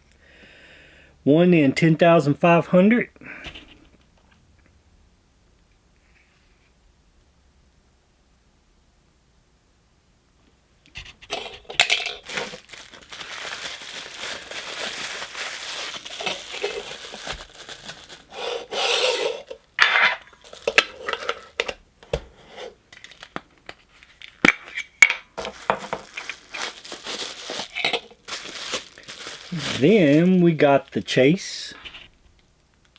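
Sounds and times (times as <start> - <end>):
wrapping rustling and crinkling: 11.0 - 21.8, 22.9 - 32.2
metal cans clinking and scraping: 11.2 - 17.5, 18.1 - 21.8, 24.4 - 30.3.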